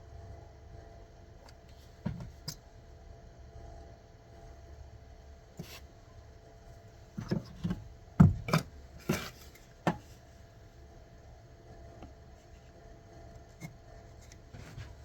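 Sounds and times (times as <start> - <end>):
short knocks and clunks: 2.0 - 2.5, 7.2 - 10.1.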